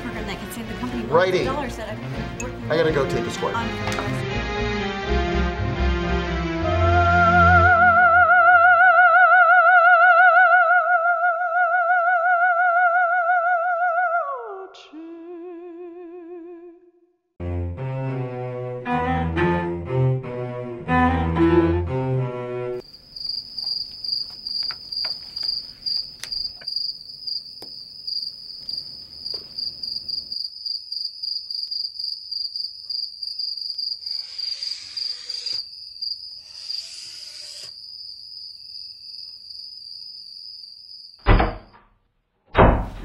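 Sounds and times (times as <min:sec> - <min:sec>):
crickets chirping: 0:22.8 - 0:41.7
loud thump: 0:41.2 - 0:41.8, 0:42.5 - 0:43.0.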